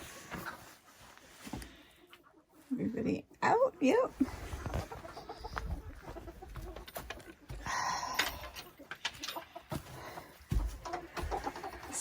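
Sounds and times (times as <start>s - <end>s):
chickens clucking softly: 0.4s - 12.0s.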